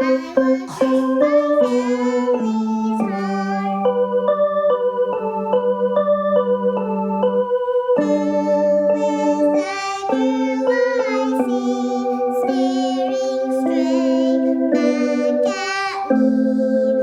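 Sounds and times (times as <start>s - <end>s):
child singing: 0.0s - 4.0s, 8.0s - 17.0s
electronic keyboard chords: 0.0s - 17.0s.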